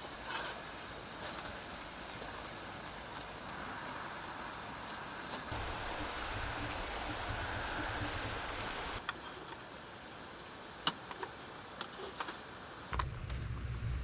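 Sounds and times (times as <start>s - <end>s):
steady outdoor hiss: 0.0s - 14.0s
low rumble: 13.0s - 14.0s.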